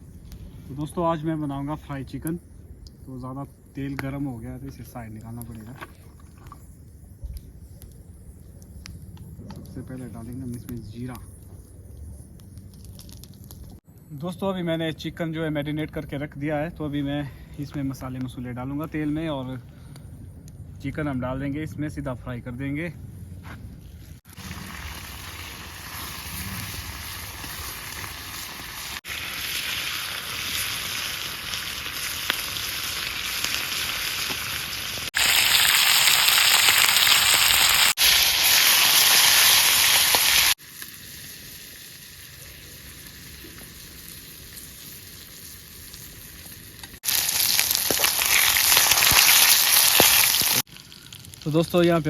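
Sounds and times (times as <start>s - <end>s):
chicken sizzling in hot oil: 24.3s - 51.5s.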